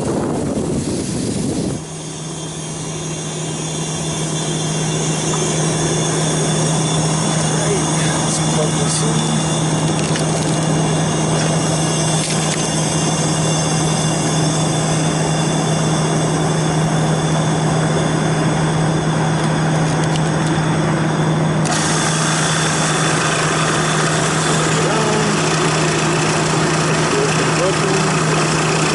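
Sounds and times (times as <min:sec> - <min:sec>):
compressor humming: 0:00.0 - 0:28.9
wide hiss: 0:21.7 - 0:27.0.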